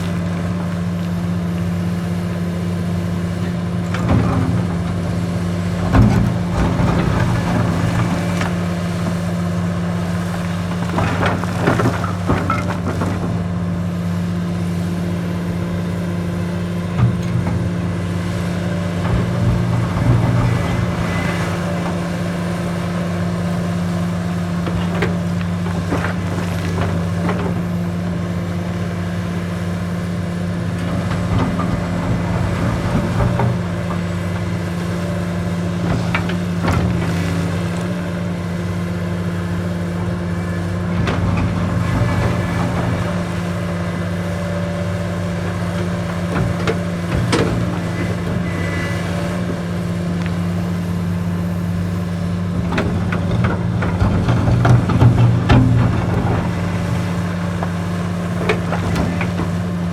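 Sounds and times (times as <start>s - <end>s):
excavator diesel engine running: 0.0s - 59.9s
knocks and clatter: 52.6s - 59.7s.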